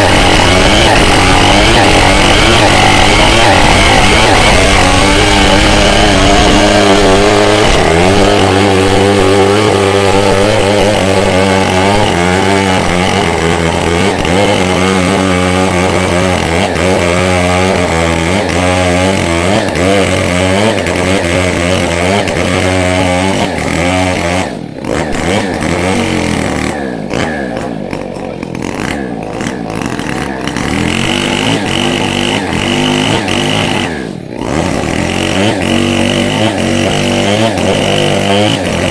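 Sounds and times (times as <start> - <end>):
chainsaw cutting wood: 0.0 - 38.9.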